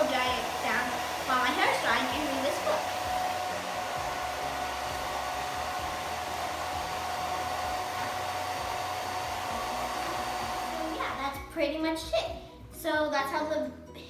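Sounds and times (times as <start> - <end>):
blow dryer rushing air: 0.0 - 11.4.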